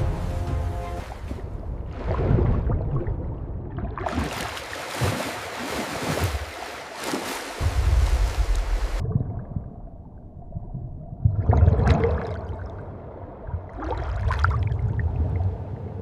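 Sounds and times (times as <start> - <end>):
water splashing surges: 0.0 - 9.0
water sloshing and gurgling: 0.0 - 16.0.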